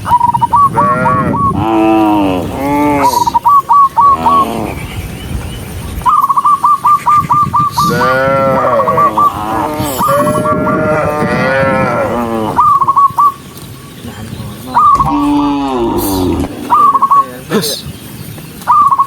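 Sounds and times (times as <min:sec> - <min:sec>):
cattle mooing: 0:00.7 - 0:03.4, 0:07.8 - 0:12.8, 0:14.8 - 0:17.1.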